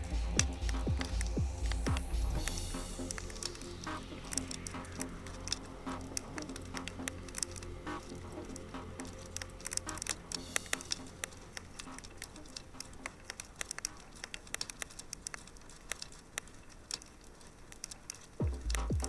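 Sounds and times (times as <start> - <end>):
low hum: 0.0 - 17.2, 18.4 - 19.0
wood fire crackling: 0.0 - 19.0.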